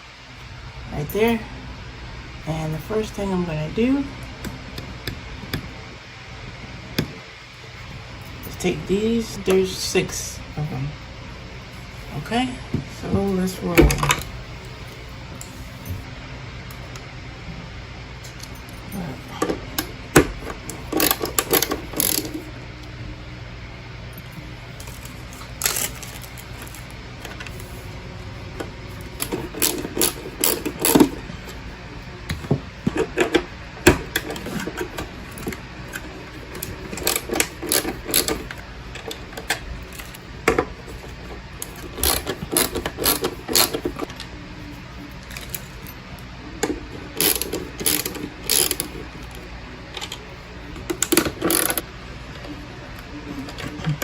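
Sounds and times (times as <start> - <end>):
steady low hum: 0.0 - 54.0
rapid mechanical clicking and rattling: 19.4 - 22.5, 28.6 - 31.2, 32.8 - 44.2, 46.6 - 51.9.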